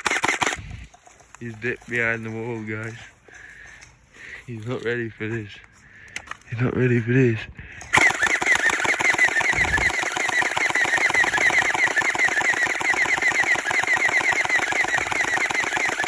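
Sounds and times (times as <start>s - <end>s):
gel blaster firing full auto: 0.0s - 0.7s, 7.9s - 16.0s.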